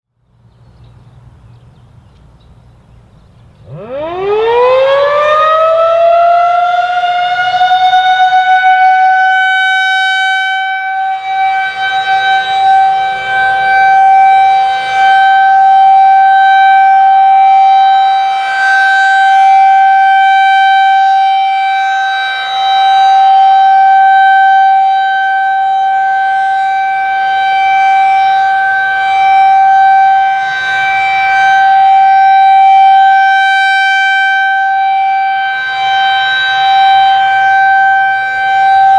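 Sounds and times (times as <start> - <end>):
rotating warning siren: 3.5 - 38.9.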